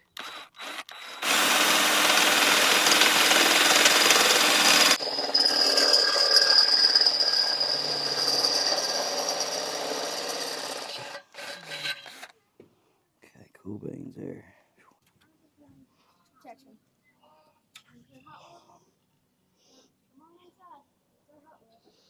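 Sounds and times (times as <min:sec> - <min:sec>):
electric drill boring: 0:00.0 - 0:12.3.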